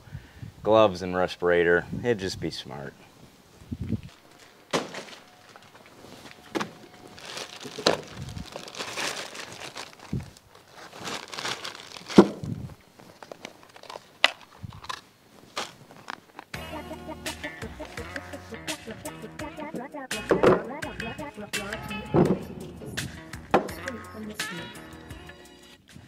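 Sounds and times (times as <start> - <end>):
crinkling and rustling of gloves: 3.1 - 16.6.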